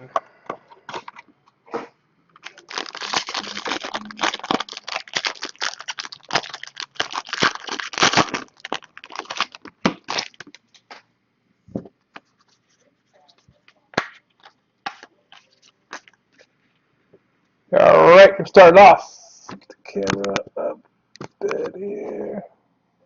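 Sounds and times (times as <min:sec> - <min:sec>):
packaging crinkling and tearing: 0:02.4 - 0:10.7, 0:14.4 - 0:16.4.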